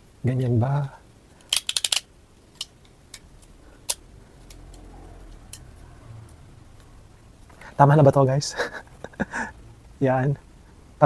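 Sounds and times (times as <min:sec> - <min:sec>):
plastic toy parts clicking: 0:01.4 - 0:04.8.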